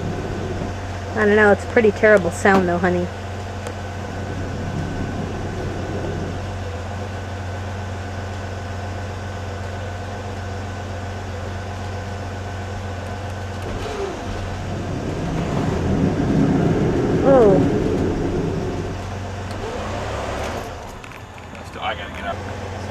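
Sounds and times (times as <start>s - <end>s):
vehicle engine running: 0.0s - 22.9s
metallic grinding from wheels: 13.6s - 22.4s.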